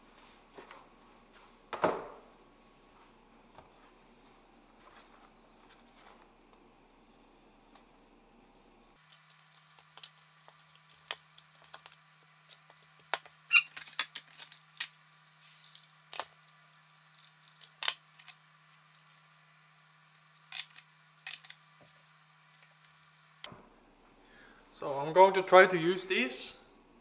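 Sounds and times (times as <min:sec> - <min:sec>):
small objects clicking on workbench: 0:09.0 - 0:19.4, 0:20.1 - 0:23.0.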